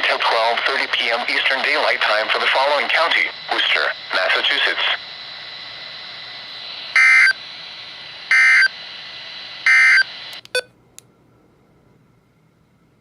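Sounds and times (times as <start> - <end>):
radio hiss: 0.0 - 10.4
digital data tones: 7.0 - 7.4, 8.3 - 8.7.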